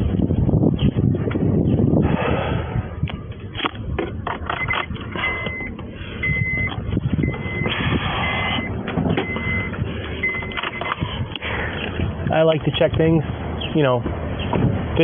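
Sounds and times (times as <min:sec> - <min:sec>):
engine running: 0:00.0 - 0:15.0
traffic noise: 0:00.0 - 0:15.0
truck backup alarm beeping: 0:04.5 - 0:11.0.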